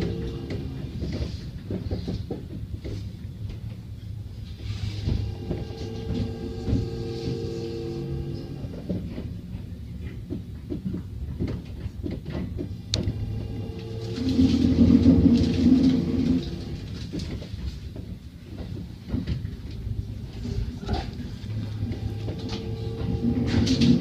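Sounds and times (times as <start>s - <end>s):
electric train running: 0.0s - 24.0s.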